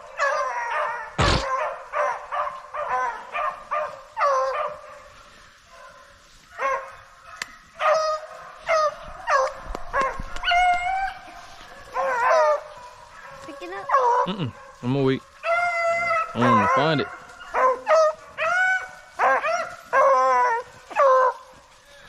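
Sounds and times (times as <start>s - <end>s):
dogs baying and yelping: 0.0s - 22.0s
sharp knock: 1.2s - 1.5s.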